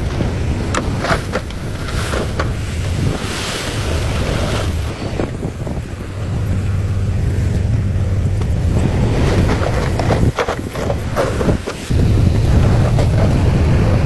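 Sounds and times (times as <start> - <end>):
diesel engine humming: 0.0 - 14.0
wind noise on microphone: 0.0 - 14.0.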